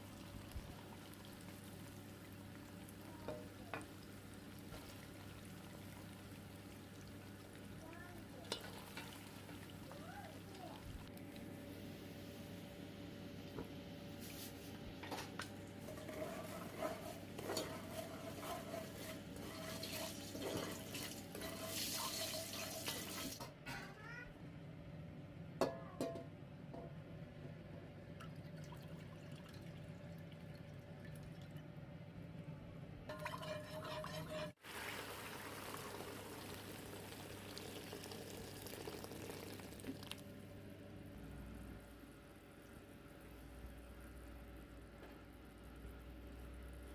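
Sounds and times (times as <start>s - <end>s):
tap water running and splashing: 0.0s - 11.1s, 15.4s - 23.5s, 34.6s - 40.3s.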